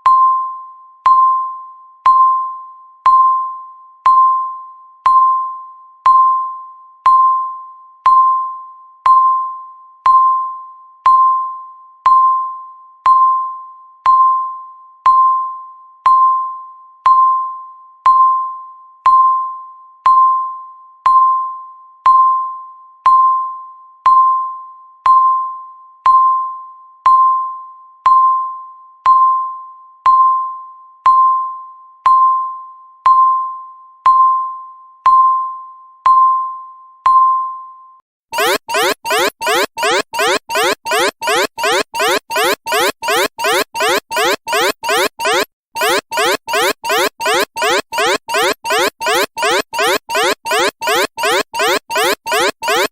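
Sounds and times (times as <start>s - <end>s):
countdown timer beeping: 38.4s - 52.9s.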